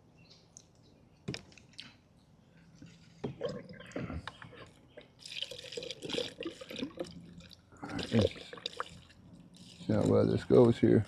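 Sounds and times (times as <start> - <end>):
wet squishing sounds: 3.6 - 10.4.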